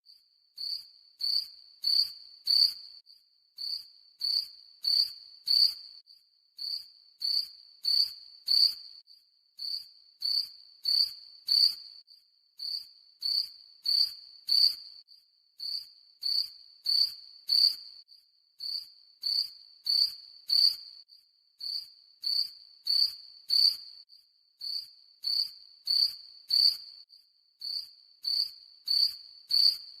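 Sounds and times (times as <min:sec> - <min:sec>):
cricket chirping: 0:00.1 - 0:30.0.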